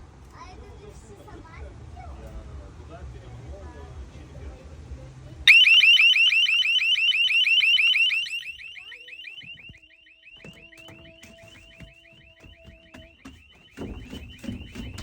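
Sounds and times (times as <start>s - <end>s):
security alarm siren warbling: 5.5s - 15.0s.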